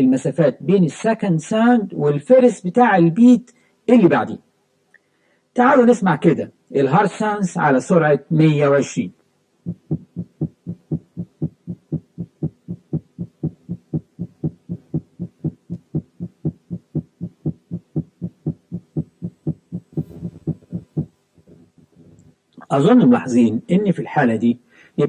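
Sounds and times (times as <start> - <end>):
fast heartbeat: 9.7 - 21.1.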